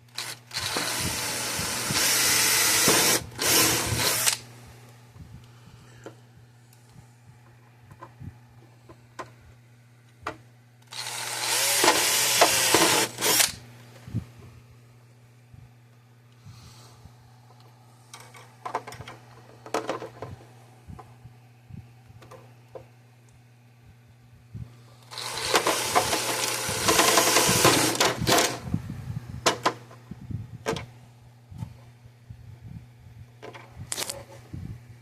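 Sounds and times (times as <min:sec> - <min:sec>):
power drill drilling: 0:00.2 - 0:04.4, 0:10.9 - 0:13.6, 0:25.1 - 0:28.5
tool handling clicks and knocks: 0:17.6 - 0:20.4.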